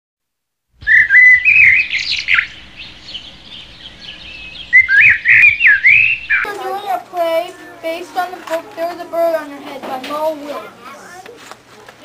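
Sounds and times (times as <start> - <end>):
bird chirping and whistling: 0.8 - 6.5.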